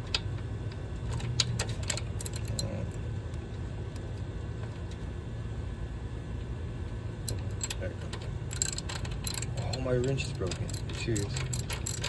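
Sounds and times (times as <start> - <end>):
steady low hum: 0.0 - 12.0
wrench clinking on metal: 8.5 - 12.0.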